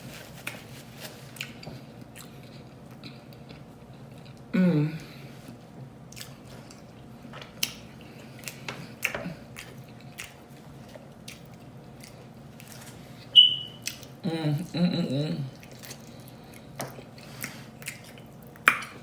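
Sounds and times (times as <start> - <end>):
chewing with wet mouth smacks: 1.3 - 4.5, 6.1 - 14.2, 15.5 - 19.0.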